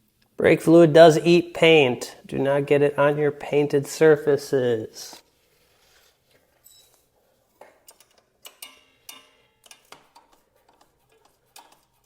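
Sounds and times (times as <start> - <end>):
metallic clicks and taps: 7.8 - 11.9.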